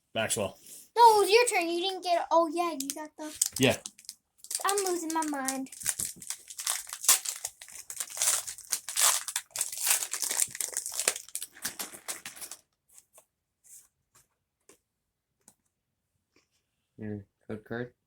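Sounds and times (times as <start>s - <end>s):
foil wrapper tearing and crinkling: 2.8s - 12.6s.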